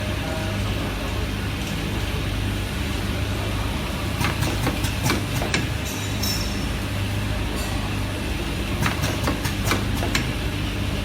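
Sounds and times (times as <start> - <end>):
machine humming: 2.0 - 11.0
sharp mechanical clacks: 4.2 - 6.4, 8.8 - 10.4.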